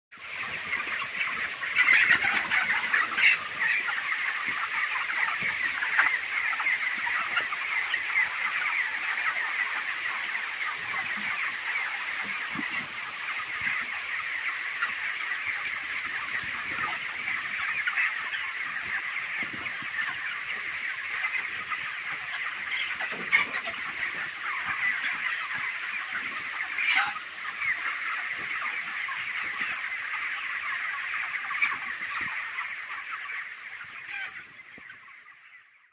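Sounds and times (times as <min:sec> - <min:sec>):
flock of chickens clucking: 0:00.1 - 0:35.9
chicken squawks: 0:00.3 - 0:35.6.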